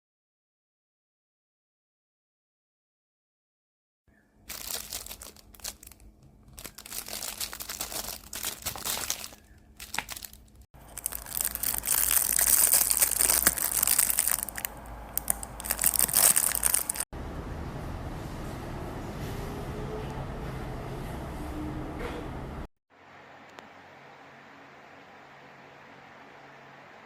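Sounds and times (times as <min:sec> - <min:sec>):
plastic packaging crinkling: 0:04.4 - 0:17.1.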